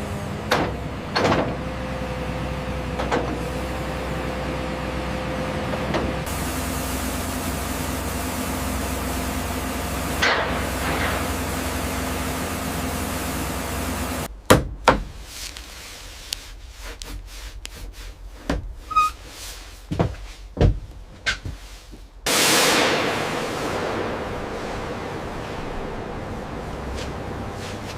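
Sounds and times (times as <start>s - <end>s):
factory machinery humming: 0.0s - 14.3s, 22.3s - 27.9s.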